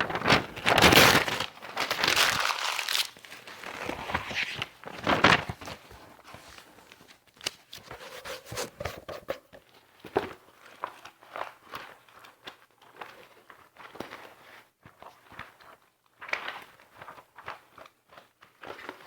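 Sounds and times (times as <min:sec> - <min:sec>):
paper rustling and crinkling: 0:00.0 - 0:09.7.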